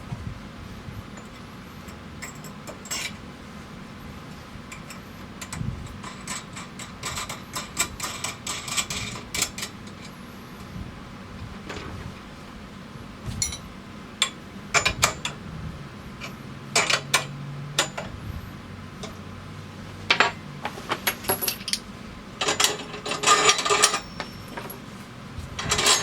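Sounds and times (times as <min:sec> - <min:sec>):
steady low hum: 0:00.0 - 0:26.0
wrenches clicking on metal: 0:22.4 - 0:24.8, 0:25.6 - 0:26.0.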